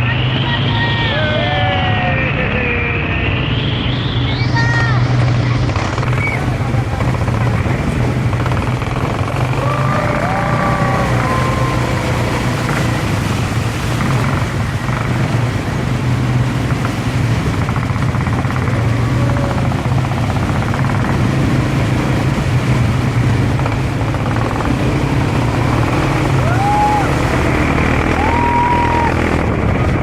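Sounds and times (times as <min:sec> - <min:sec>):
rushing noise: 0:00.0 - 0:30.0
vehicle engine humming: 0:00.0 - 0:30.0.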